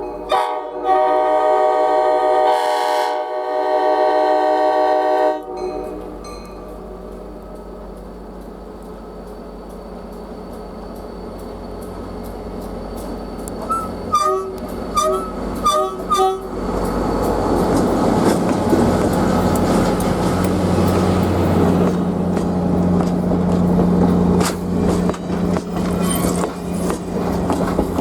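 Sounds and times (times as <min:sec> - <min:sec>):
locomotive horn blasts: 0:00.1 - 0:06.0, 0:13.7 - 0:16.5
wheels on rails: 0:05.8 - 0:28.0.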